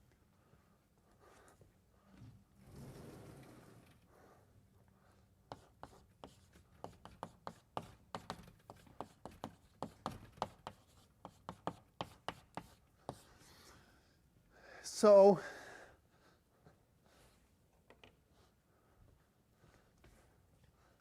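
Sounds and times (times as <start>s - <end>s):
chalk tapping on a blackboard: 5.5s - 13.3s.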